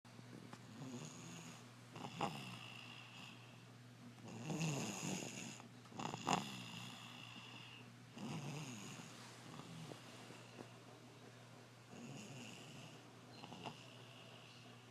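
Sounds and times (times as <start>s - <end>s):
child snoring heavily: 0.7s - 3.6s, 4.2s - 9.9s, 11.9s - 14.6s.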